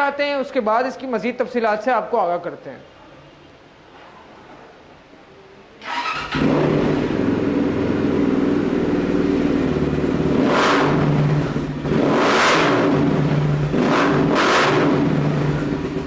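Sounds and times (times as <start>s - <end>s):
dirt bike engine idling: 6.6s - 12.0s, 14.9s - 16.0s.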